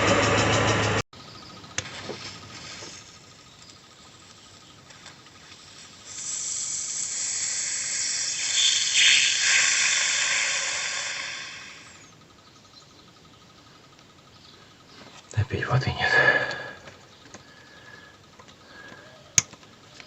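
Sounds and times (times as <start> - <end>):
steady hiss: 2.0 - 12.1.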